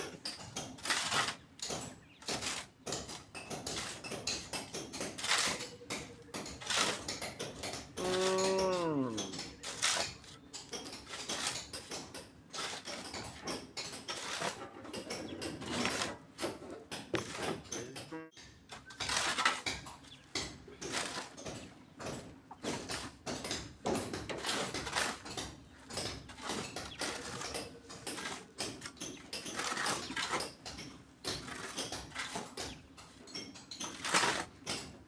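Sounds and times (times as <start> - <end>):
cow mooing: 8.0 - 9.3.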